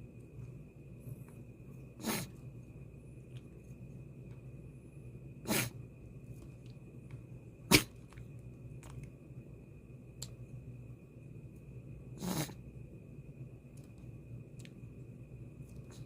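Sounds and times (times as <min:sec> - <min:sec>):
dog sneezing: 0:02.0 - 0:02.3, 0:05.4 - 0:05.8, 0:07.7 - 0:08.0, 0:12.2 - 0:12.6.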